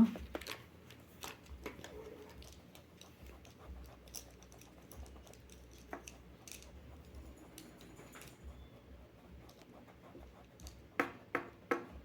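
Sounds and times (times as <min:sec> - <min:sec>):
pens and pencils tapping on table: 0:10.6 - 0:12.0.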